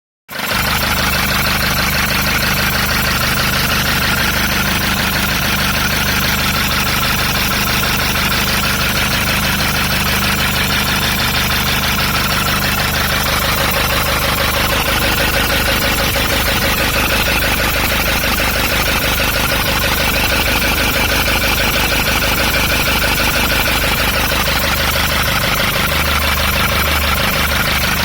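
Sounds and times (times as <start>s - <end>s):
car engine idling: 0.3s - 28.0s
fast regular ticking: 0.7s - 28.0s.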